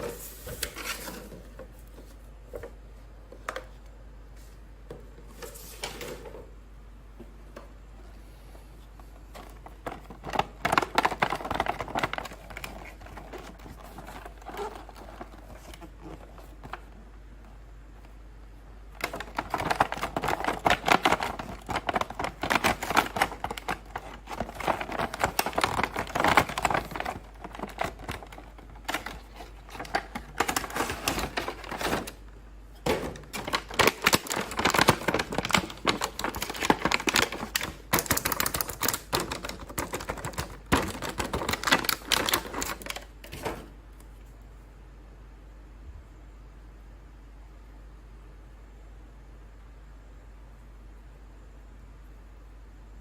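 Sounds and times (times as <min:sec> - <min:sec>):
packaging crinkling and clicking: 0:09.2 - 0:17.0, 0:18.9 - 0:44.1.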